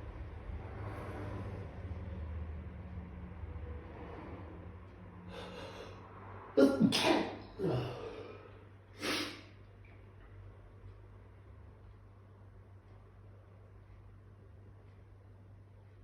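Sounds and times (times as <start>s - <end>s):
person inhaling: 5.3s - 6.8s, 7.6s - 9.5s
person sneezing: 6.6s - 8.3s, 9.0s - 9.5s.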